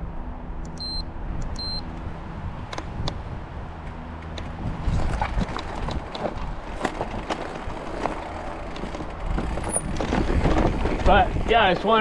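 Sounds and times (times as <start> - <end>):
wind on microphone: 1.3 - 7.2, 9.1 - 12.0.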